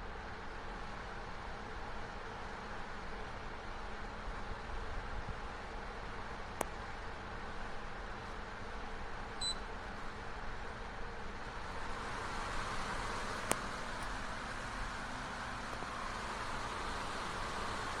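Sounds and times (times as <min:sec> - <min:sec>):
short electronic beep: 0:09.4 - 0:09.6.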